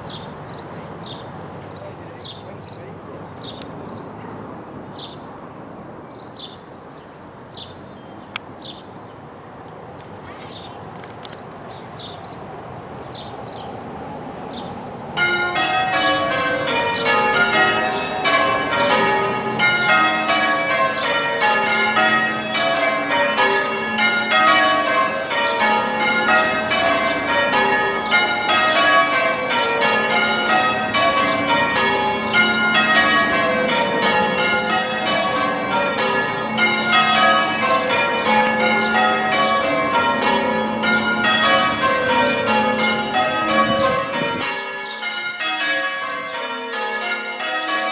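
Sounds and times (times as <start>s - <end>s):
church bells change ringing: 15.2s - 47.9s.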